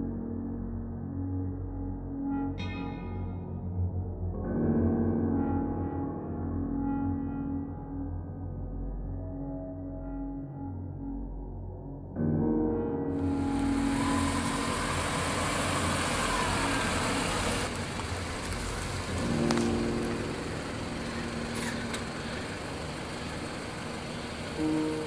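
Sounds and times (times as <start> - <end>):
car engine and road noise: 13.1 - 25.0.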